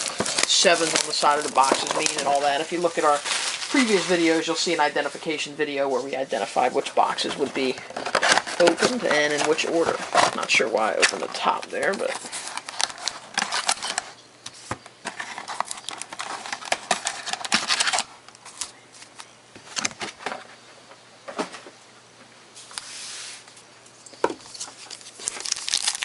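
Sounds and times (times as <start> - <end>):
card packs clicking and crinkling: 0.0 - 4.8, 7.0 - 14.2, 15.0 - 20.0, 24.5 - 26.0
packaging rustle: 0.0 - 5.4, 7.0 - 14.2, 15.0 - 19.3, 24.4 - 26.0.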